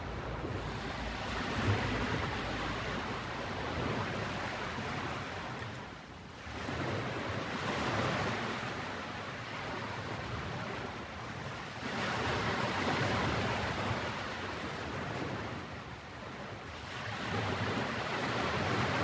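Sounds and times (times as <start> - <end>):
ocean waves washing onto beach: 0.0 - 19.0.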